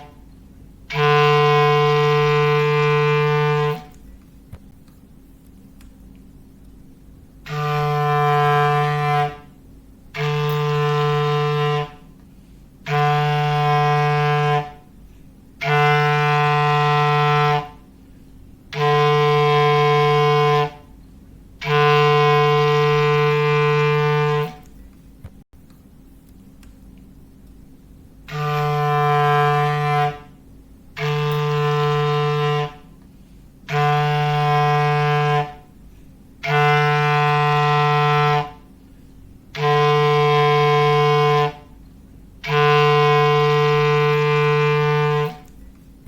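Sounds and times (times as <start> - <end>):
low foghorn blasts: 0.9 - 4.0, 7.4 - 12.2, 12.8 - 18.0, 18.7 - 21.0, 21.6 - 24.7, 28.3 - 33.0, 33.7 - 35.8, 36.4 - 38.7, 39.5 - 41.8, 42.4 - 45.5.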